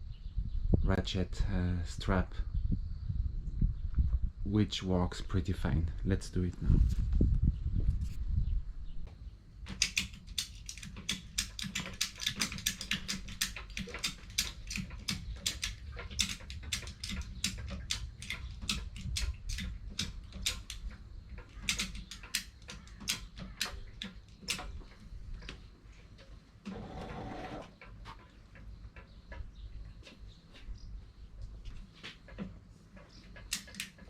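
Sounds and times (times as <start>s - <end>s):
ratchet strap clicking: 9.7s - 24.8s.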